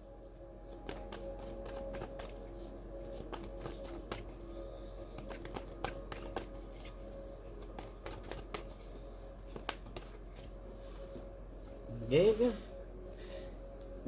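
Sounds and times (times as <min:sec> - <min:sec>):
cards tapping and sliding on table: 0:05.2 - 0:06.5.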